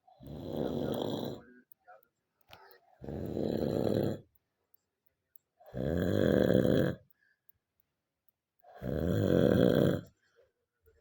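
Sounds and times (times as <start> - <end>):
loud rasping snores: 0.1 - 1.5, 3.0 - 4.3, 5.7 - 7.0, 8.7 - 10.1.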